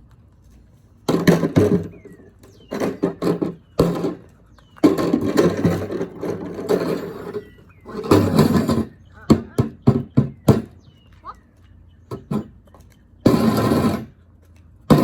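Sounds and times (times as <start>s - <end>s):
rough scraping and rattling: 0.4s - 10.9s, 13.2s - 14.2s
hard objects banging on ground: 1.1s - 10.9s, 12.1s - 12.6s.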